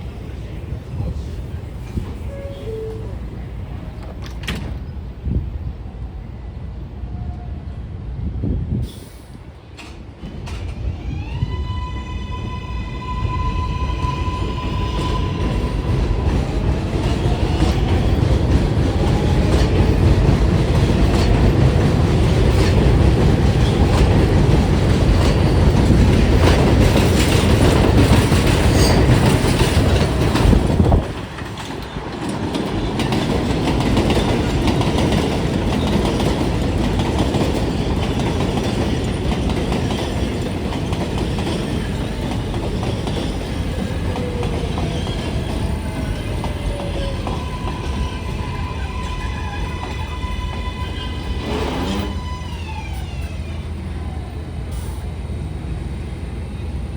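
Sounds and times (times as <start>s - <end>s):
subway train rumble: 0.0s - 56.9s
wheels clacking over rail joints: 13.8s - 52.2s.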